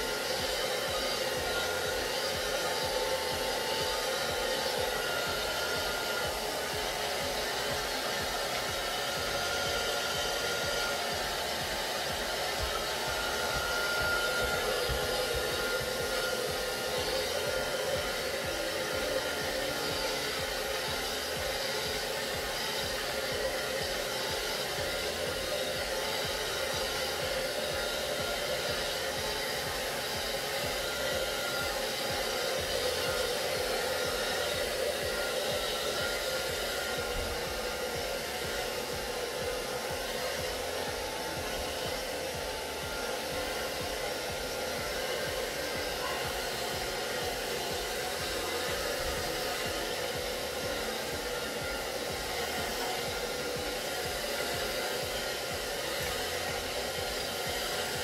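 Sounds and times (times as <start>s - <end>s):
hair dryer blowing: 0.0s - 58.0s.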